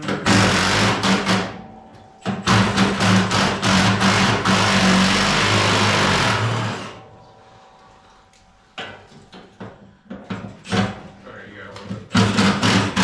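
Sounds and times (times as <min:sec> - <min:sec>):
power drill motor: 0:02.5 - 0:07.0.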